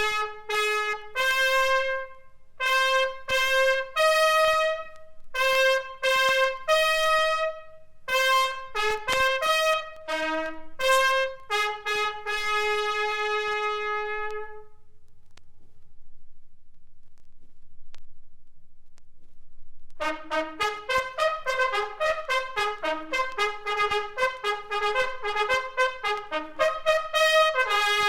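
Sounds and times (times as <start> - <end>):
bugle call: 0.0 - 14.7, 20.0 - 28.0
record surface noise: 14.3 - 25.0.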